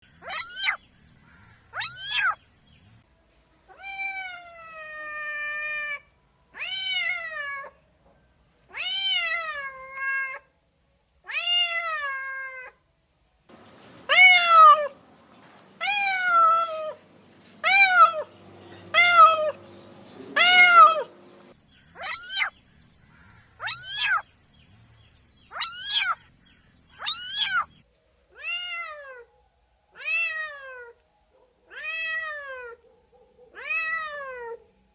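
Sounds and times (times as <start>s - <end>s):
cats meowing: 0.2s - 0.8s, 1.8s - 2.4s, 6.6s - 7.7s, 8.7s - 10.4s, 11.3s - 12.8s, 13.5s - 15.0s, 15.7s - 22.5s, 23.6s - 24.2s, 25.5s - 26.2s, 27.0s - 27.7s, 28.4s - 29.3s, 30.0s - 31.0s, 31.7s - 32.8s, 33.5s - 34.6s.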